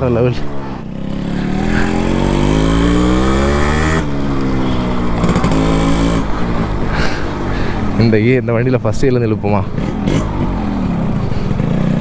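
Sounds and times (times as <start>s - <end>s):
two-stroke engine revving: 0.2s - 6.4s, 9.7s - 12.0s.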